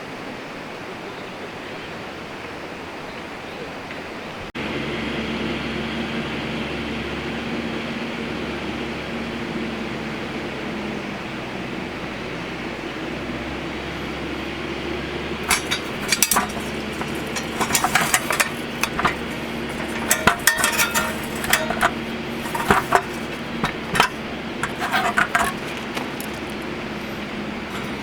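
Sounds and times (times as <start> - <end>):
steady low hum: 15.3 - 28.0
metal parts clinking and clattering: 15.4 - 26.6, 27.7 - 28.0.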